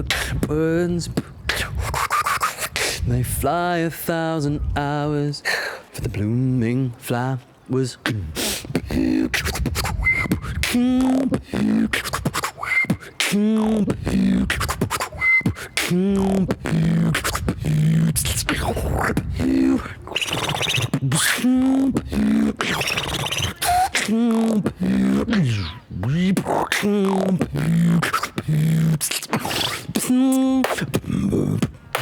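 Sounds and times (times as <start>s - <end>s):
beatbox drum hits: 8.6s - 18.5s, 20.2s - 32.0s
hummed bass line: 13.6s - 14.9s, 15.9s - 19.9s.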